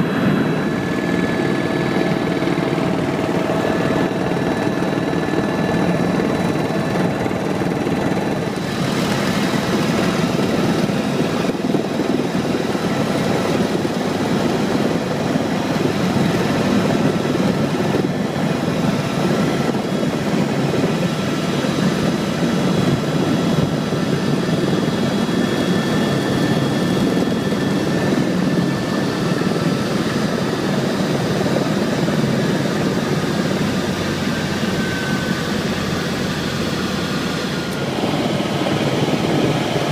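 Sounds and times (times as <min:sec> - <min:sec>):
helicopter engine and rotor: 0:00.0 - 0:39.9
faint high whine: 0:34.0 - 0:39.8.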